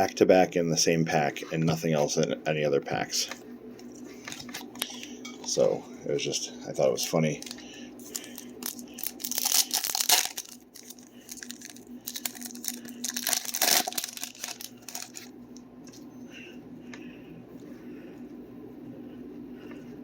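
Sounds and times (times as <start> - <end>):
foil wrapper tearing and crinkling: 7.4 - 15.3.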